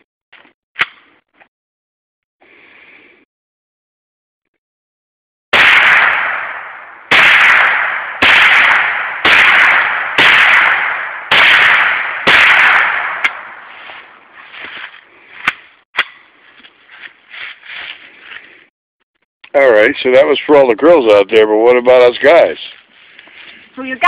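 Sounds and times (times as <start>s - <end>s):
rifle shots echoing: 5.5s - 14.2s.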